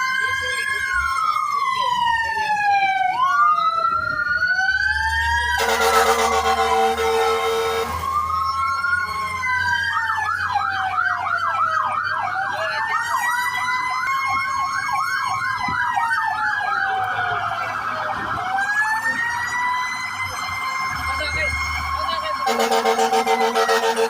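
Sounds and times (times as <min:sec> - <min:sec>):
siren fast yelp: 0:00.0 - 0:24.0
sirens wailing: 0:00.0 - 0:24.0
horn blast: 0:05.5 - 0:08.1, 0:22.4 - 0:24.0.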